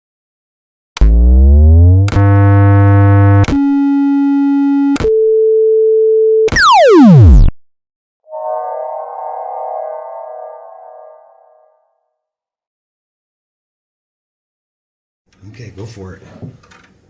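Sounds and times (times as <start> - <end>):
electronic beeping tones: 8.3 - 11.7
synthesized falling sweep: 8.3 - 11.8
synthesized rising glide: 8.3 - 11.8.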